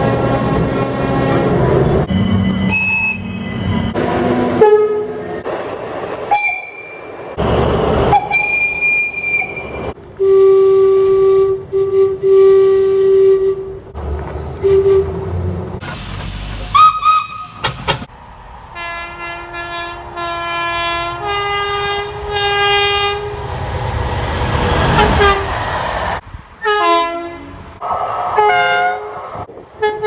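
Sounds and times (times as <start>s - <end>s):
passing trains rumbling: 0.0s - 30.0s
train horn blasts: 4.4s - 5.3s, 10.2s - 13.8s, 14.6s - 15.3s, 18.8s - 23.5s, 24.8s - 25.6s, 26.6s - 27.6s, 28.4s - 29.2s, 29.8s - 30.0s.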